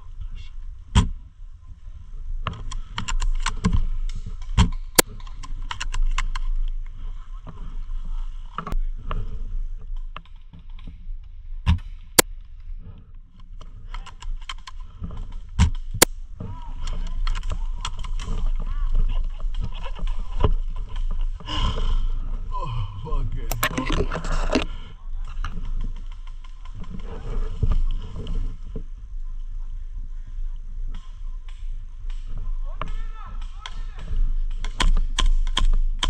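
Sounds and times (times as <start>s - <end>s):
airsoft guns cracking: 2.7s - 6.5s
small clicks: 23.5s - 27.0s.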